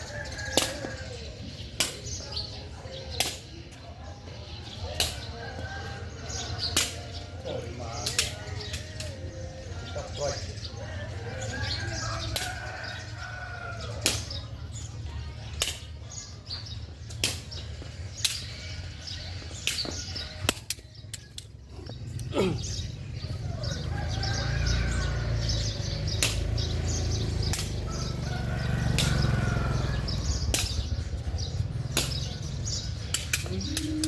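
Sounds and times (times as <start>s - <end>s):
sharp slaps or flaps: 17.1s - 17.6s, 26.2s - 26.6s, 27.4s - 27.9s, 29.0s - 29.2s, 30.5s - 30.9s, 31.9s - 32.3s.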